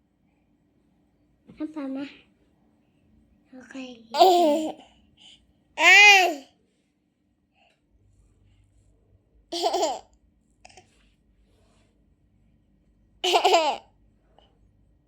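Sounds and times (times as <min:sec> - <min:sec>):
baby laughing: 0:04.2 - 0:04.8, 0:09.6 - 0:10.0, 0:13.2 - 0:13.8.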